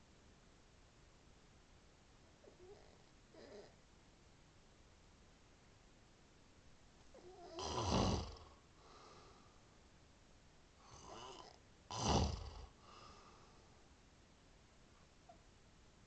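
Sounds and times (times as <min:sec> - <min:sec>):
man snoring: 0:07.4 - 0:08.6, 0:10.9 - 0:12.7.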